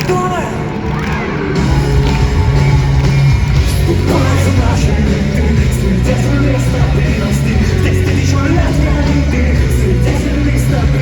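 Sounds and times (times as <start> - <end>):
punk rock band playing live: 0.0 - 11.0
person singing: 3.6 - 11.0.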